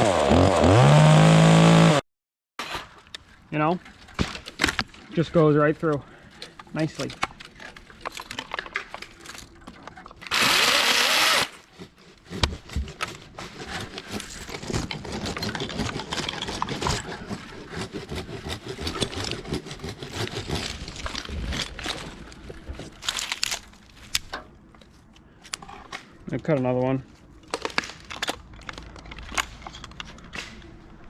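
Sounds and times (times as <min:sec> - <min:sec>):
chainsaw cutting wood: 0:00.0 - 0:02.0, 0:10.2 - 0:11.7
wood crackling and knocking: 0:18.1 - 0:24.9.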